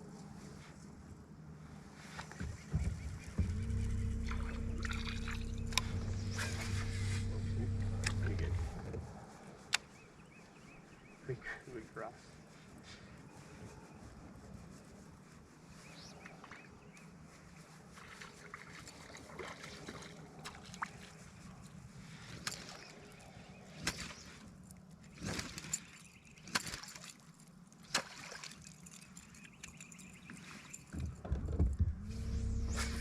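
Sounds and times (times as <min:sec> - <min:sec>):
low steady hum: 0:00.0 - 0:09.4, 0:31.4 - 0:33.0
boat motor running: 0:02.7 - 0:09.0.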